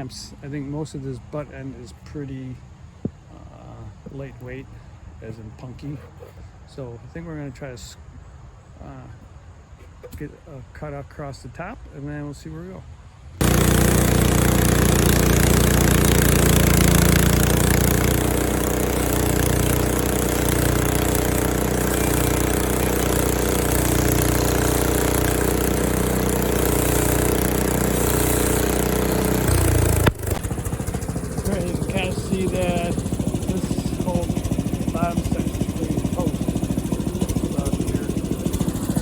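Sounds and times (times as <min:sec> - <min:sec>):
bandsaw mill engine running: 0:13.4 - 0:39.0.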